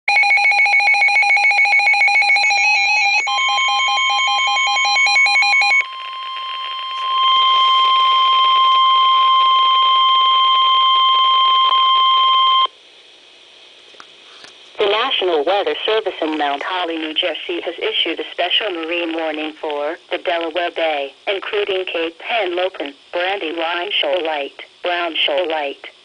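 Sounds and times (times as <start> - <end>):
steady warning alarm tone: 0.1 - 12.7
rapidly pulsing electronic beep: 0.2 - 12.7.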